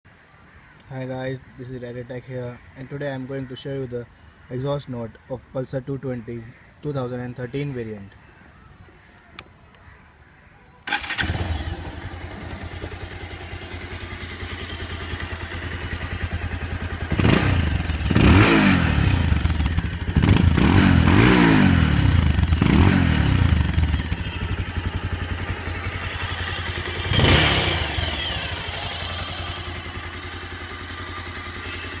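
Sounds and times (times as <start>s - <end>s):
motorcycle engine starting and revving: 10.8s - 32.0s.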